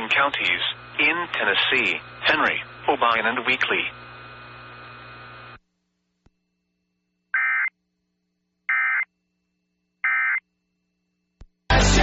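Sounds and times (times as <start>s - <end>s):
emergency alert data tones: 7.4s - 7.7s, 8.7s - 9.1s, 10.0s - 10.4s.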